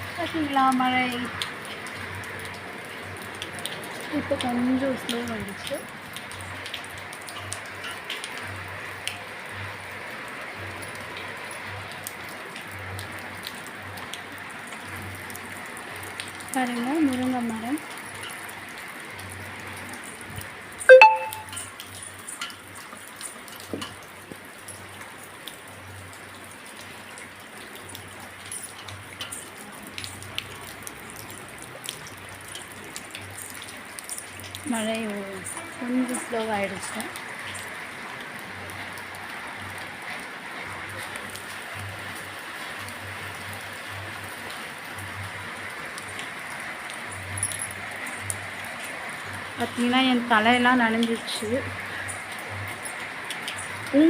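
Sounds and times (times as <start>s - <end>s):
steady rain falling: 0.0s - 54.0s
drips and taps of drops: 20.0s - 25.6s, 46.9s - 48.4s
sharp drip clicks: 26.7s - 35.7s, 46.9s - 49.0s.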